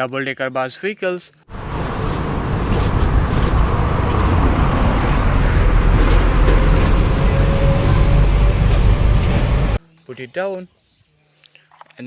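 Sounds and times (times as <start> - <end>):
large vehicle engine rumbling: 1.5 - 9.8.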